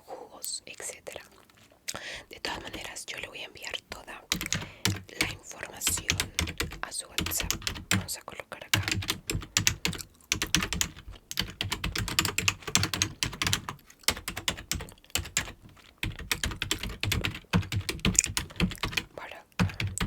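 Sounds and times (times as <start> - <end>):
computer keyboard typing: 4.3 - 20.0.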